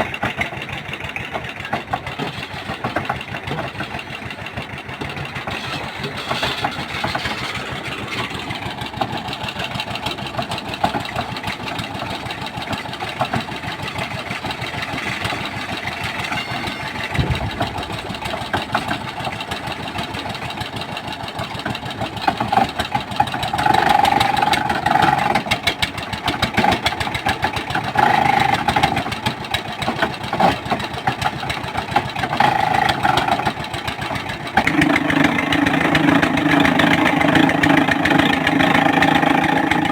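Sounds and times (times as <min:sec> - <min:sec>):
boring machine engine running: 0:01.9 - 0:09.3, 0:11.9 - 0:25.6, 0:34.5 - 0:39.9.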